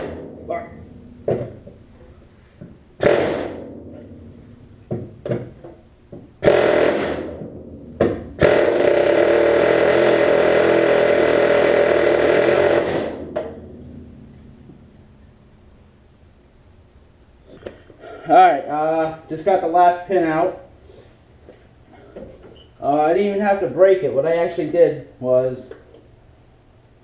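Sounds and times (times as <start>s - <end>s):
pneumatic air chisel hammering: 0.0s - 0.7s, 3.0s - 3.8s, 6.4s - 13.6s.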